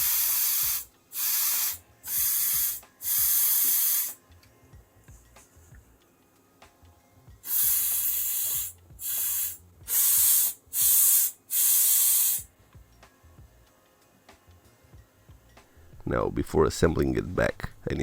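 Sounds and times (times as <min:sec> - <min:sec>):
compressed air hissing blasts: 0:00.0 - 0:04.2, 0:07.4 - 0:12.5.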